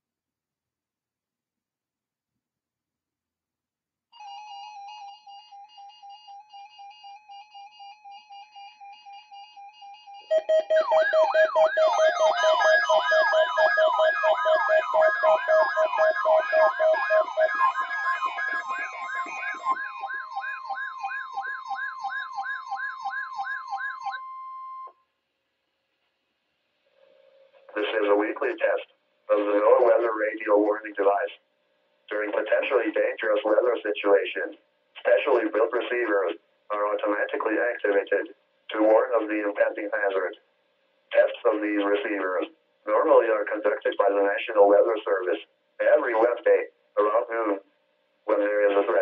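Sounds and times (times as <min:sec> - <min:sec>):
steady warning tone: 0:04.2 - 0:24.9
warbling siren alarms: 0:04.2 - 0:24.9
steady beeping: 0:09.6 - 0:24.9.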